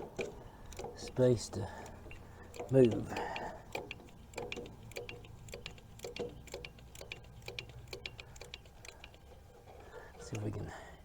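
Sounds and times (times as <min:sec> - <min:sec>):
socket ratchet clicking: 0:01.9 - 0:09.3.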